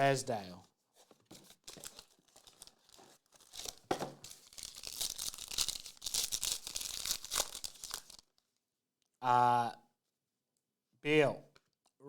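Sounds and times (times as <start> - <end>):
card pack wrapper crinkling: 1.0 - 8.4.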